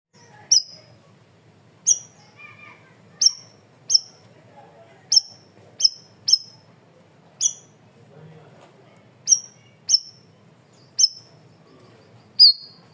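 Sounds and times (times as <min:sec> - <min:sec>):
bird twittering: 0:00.2 - 0:01.0, 0:01.8 - 0:02.4, 0:03.1 - 0:04.2, 0:05.1 - 0:06.7, 0:07.4 - 0:07.8, 0:09.2 - 0:12.9
bird sharp piercing calls: 0:00.3 - 0:01.0, 0:01.8 - 0:04.2, 0:05.1 - 0:06.7, 0:07.4 - 0:07.8, 0:09.2 - 0:11.4, 0:12.4 - 0:12.9.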